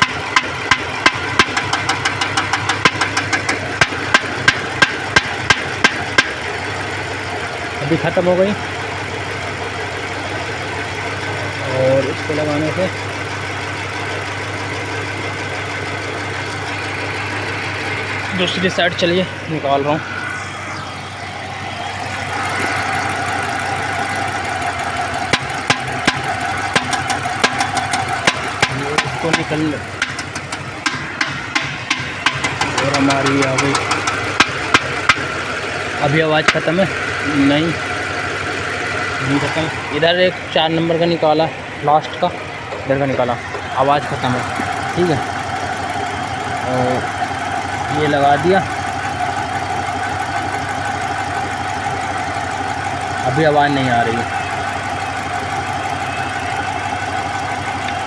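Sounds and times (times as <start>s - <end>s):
sharp misfire cracks: 0.0s - 6.8s, 21.3s - 37.2s
engine idling: 0.0s - 58.0s.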